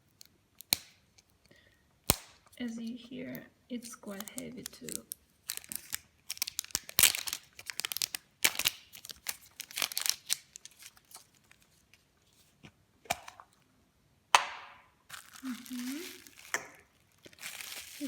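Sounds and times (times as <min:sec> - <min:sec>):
sharp crack: 0:02.0 - 0:02.4
wrapper tearing and crinkling: 0:03.8 - 0:11.8, 0:15.1 - 0:18.0.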